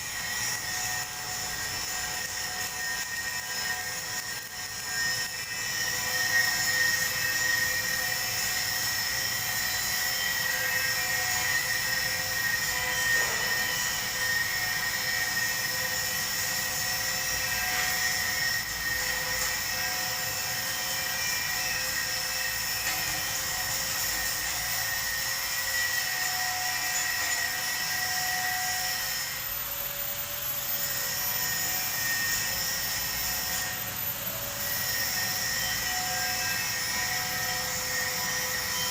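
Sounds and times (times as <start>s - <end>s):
arc welding hiss: 0.0s - 29.4s
welding machine high-pitched whine: 0.0s - 38.9s.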